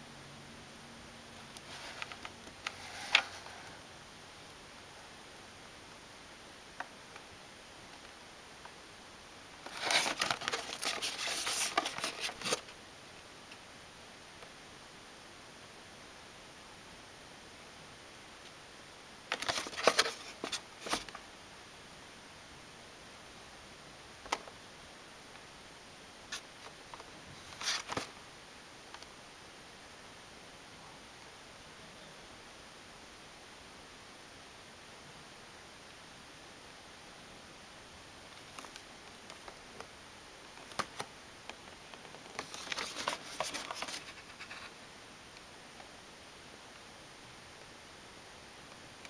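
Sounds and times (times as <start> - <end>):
steady hiss: 0.0 - 49.0
packaging rustling: 9.6 - 12.8, 19.3 - 21.2, 27.4 - 28.1, 42.2 - 44.7.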